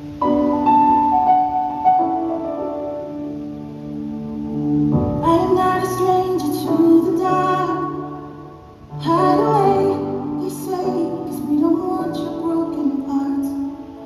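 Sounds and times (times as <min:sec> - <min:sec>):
woman singing slow melody: 0:05.2 - 0:14.0.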